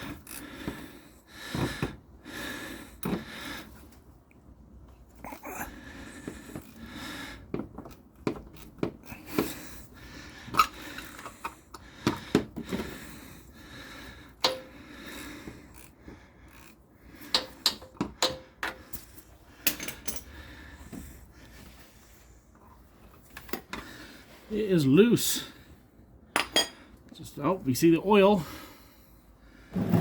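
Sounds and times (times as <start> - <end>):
metal tools clinking: 17.3 - 20.4.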